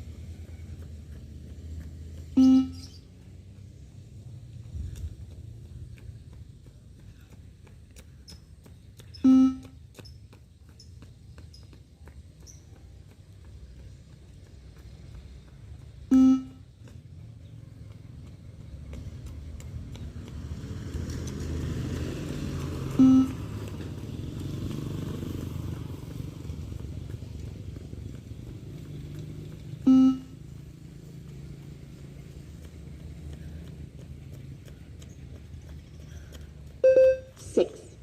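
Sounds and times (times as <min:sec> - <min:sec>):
low electronic beeps: 0:02.3 - 0:03.0, 0:09.2 - 0:09.8, 0:16.1 - 0:16.6, 0:23.0 - 0:23.4, 0:29.9 - 0:30.4, 0:36.8 - 0:38.0.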